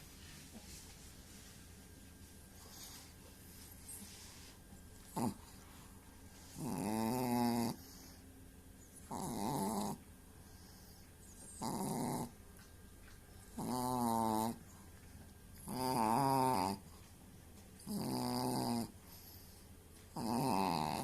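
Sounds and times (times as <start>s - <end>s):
dog snoring: 5.0s - 5.6s, 6.4s - 8.2s, 8.9s - 12.4s, 13.5s - 14.8s, 15.6s - 16.9s, 17.8s - 21.0s.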